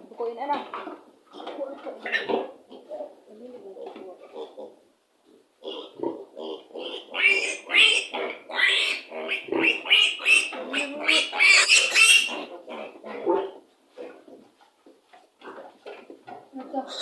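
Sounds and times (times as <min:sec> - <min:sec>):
piglets grunting: 0:05.6 - 0:13.6
piglets squealing: 0:06.8 - 0:12.5.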